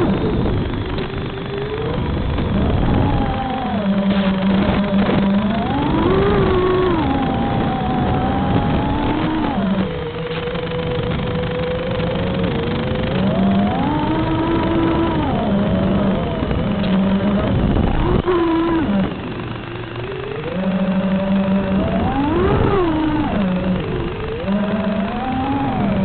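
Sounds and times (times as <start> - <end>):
electric motor and propeller whining: 0.0 - 26.0
wind rumble: 0.0 - 26.0.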